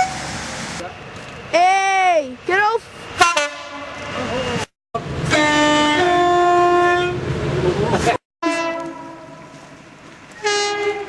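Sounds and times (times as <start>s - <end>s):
two-tone train horn: 3.2s - 4.0s, 5.2s - 7.3s, 8.4s - 9.7s, 10.4s - 11.0s.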